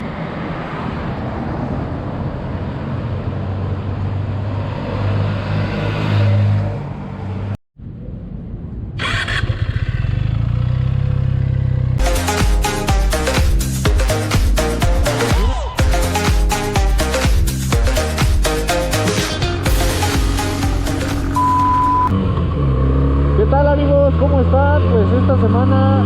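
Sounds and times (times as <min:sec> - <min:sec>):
motorcycle engine revving: 0:09.0 - 0:12.4, 0:18.9 - 0:26.0
electronic dance music: 0:12.0 - 0:22.1.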